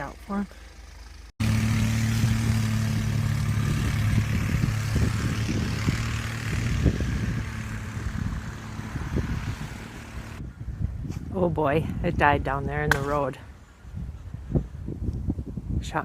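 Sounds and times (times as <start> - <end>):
vehicle engine droning: 0.0 - 11.1
wind noise hiss: 3.0 - 12.2, 13.5 - 16.0.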